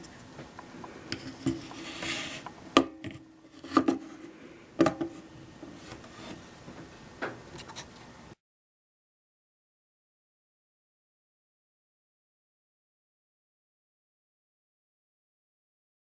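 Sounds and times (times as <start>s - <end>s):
faint steady hum: 0.0s - 8.4s
brief rub: 1.1s - 2.5s
hard objects knocking and clicking: 4.8s - 5.2s.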